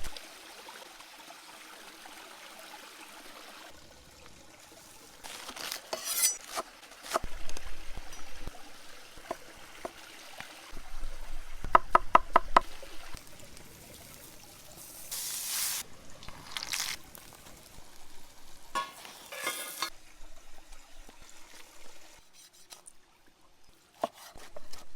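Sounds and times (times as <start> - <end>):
hissing splashes: 12.6 - 18.1
kitchen knocks and clatter: 18.8 - 19.9.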